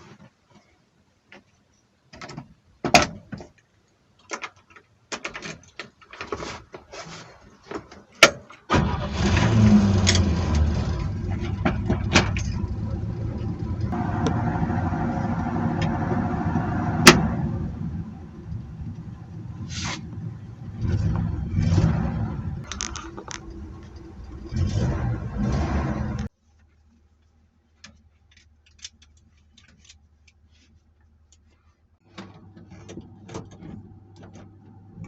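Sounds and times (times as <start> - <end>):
pickup truck engine starting and running: 8.7 - 26.3.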